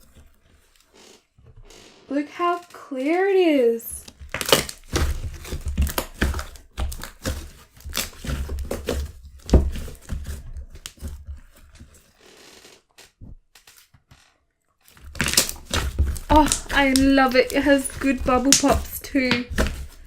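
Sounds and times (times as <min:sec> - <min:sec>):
sticky crackles and bubble pops: 0:03.9 - 0:08.8, 0:15.0 - 0:20.0
slime squished by hand: 0:14.9 - 0:20.0.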